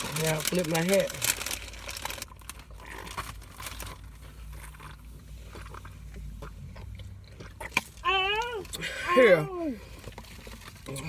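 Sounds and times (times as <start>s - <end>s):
snack bag crackling: 0.0s - 5.9s.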